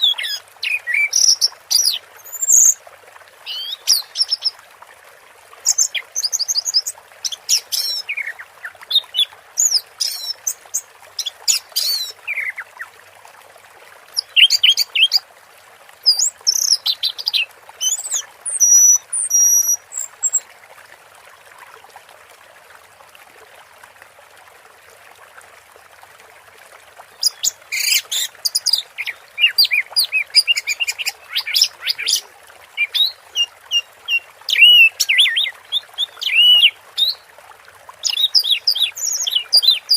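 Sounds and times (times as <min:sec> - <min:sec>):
flowing water hiss: 0:00.0 - 0:39.9
thrush singing whistles and trills: 0:17.8 - 0:20.4, 0:36.2 - 0:37.2.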